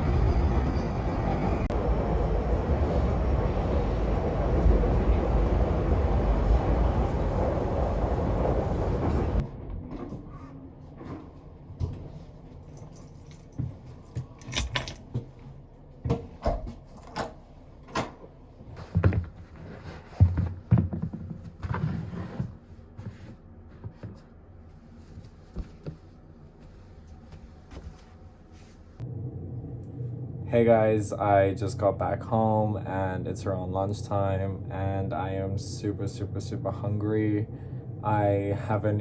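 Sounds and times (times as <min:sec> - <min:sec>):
keys jangling: 0:12.6 - 0:15.2.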